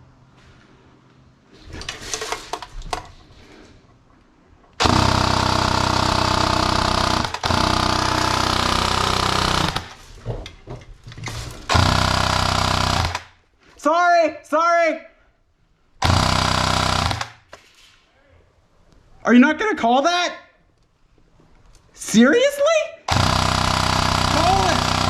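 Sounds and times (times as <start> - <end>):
airsoft rifle firing full-auto: 4.8 - 10.0, 11.7 - 13.4, 16.0 - 17.5, 23.1 - 25.0.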